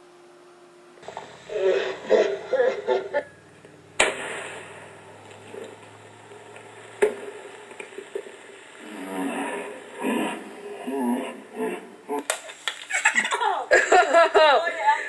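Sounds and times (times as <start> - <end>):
bat striking can: 4.0 - 4.9, 12.2 - 13.0
short hiss: 4.0 - 8.6.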